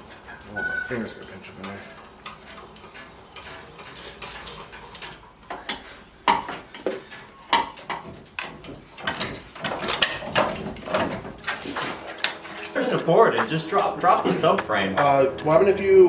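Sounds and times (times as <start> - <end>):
metal parts and tools clanking: 0.0 - 15.8
short squeaks: 0.3 - 1.3.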